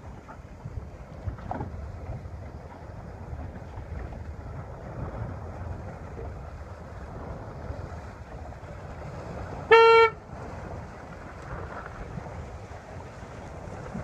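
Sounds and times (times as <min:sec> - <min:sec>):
wind noise on microphone: 0:00.0 - 0:14.0
short horn blast: 0:09.6 - 0:10.2.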